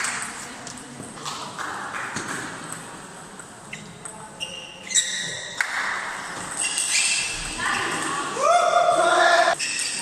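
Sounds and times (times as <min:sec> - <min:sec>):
brief high squeaks: 0:03.7 - 0:05.6, 0:06.5 - 0:07.6.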